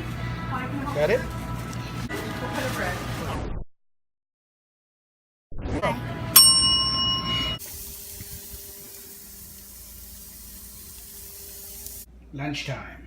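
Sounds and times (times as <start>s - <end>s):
bright bell ding: 6.4s - 7.6s
steady low hiss: 6.8s - 12.3s.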